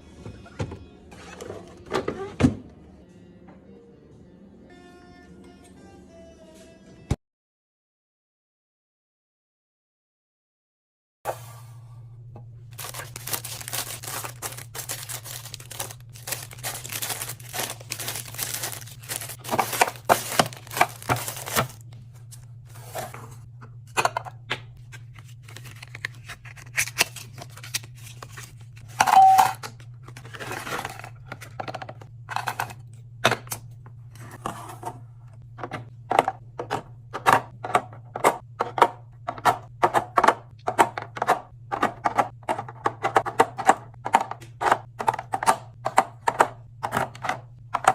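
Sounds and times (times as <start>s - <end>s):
steady low hum: 11.3s - 45.0s
items clicking and tapping: 12.8s - 21.9s, 28.8s - 47.9s
plastic packaging crinkling: 12.8s - 21.9s
short beep: 29.0s - 29.6s.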